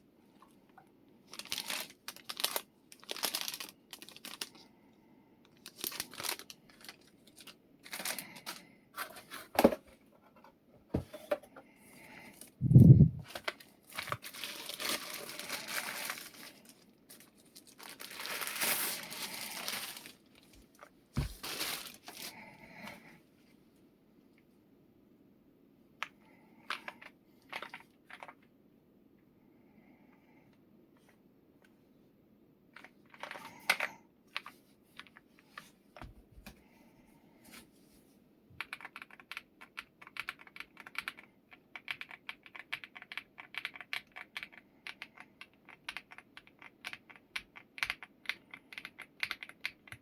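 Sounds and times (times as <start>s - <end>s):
plastic and paper crinkling: 1.3s - 4.6s, 5.5s - 9.5s, 13.2s - 22.6s.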